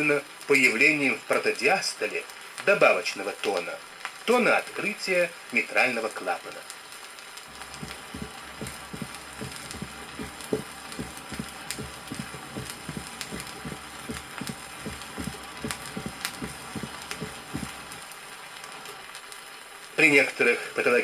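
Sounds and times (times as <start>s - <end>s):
vinyl record crackle: 2.3s - 21.0s
heartbeat with extra snap: 7.5s - 18.0s.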